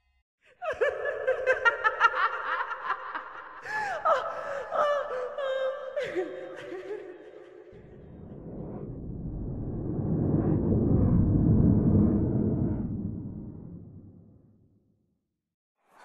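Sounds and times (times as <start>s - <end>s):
eerie cackling laughter: 0.5s - 8.2s.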